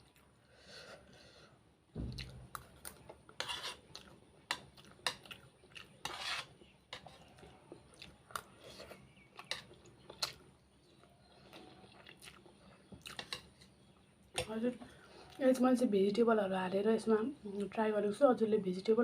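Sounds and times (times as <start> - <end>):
low thump: 1.9 - 2.5
chewing: 2.1 - 6.1, 6.9 - 13.8.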